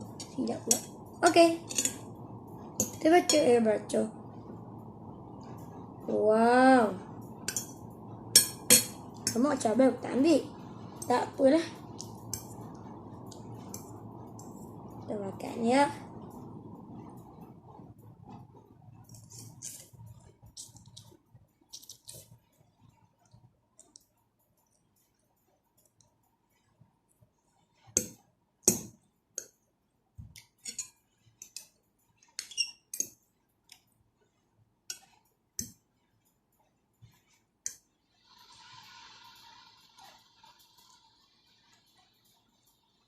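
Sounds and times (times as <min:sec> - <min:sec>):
soft steady rushing noise: 0:00.0 - 0:43.0
utensils clinking against a bowl: 0:01.5 - 0:02.1, 0:07.5 - 0:07.8, 0:08.4 - 0:09.4, 0:30.6 - 0:31.7.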